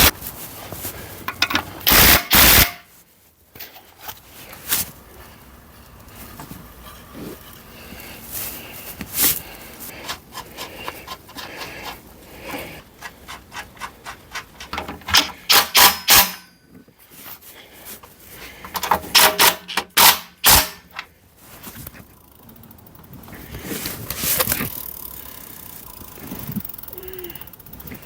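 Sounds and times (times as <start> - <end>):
squeaks of bike parts: 6.0 - 15.5
metallic clicks of tools: 10.0 - 16.6, 18.6 - 21.1.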